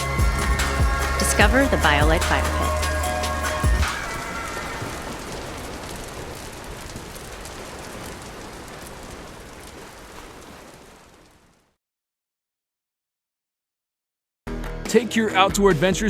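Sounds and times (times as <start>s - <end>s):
wood fire crackling and popping: 0.4s - 11.8s
steady fire hiss: 0.5s - 11.6s.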